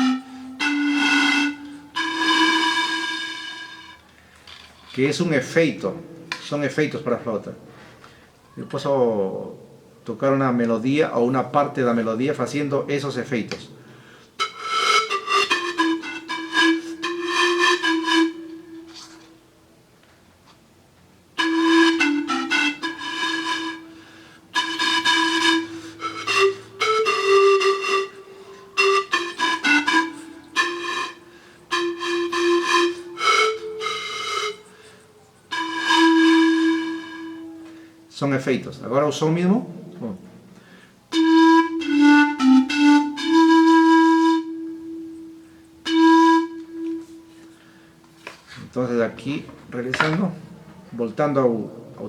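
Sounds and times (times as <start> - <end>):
pan flute melody: 0.0 - 7.2, 14.4 - 19.9, 21.1 - 38.2, 39.8 - 51.0.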